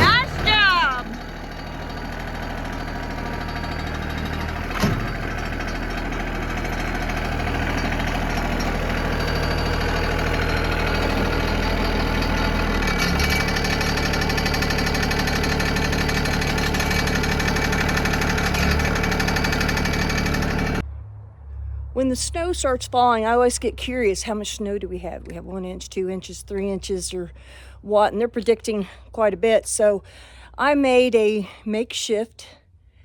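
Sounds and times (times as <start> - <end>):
farm machine engine running: 0.0 - 20.8.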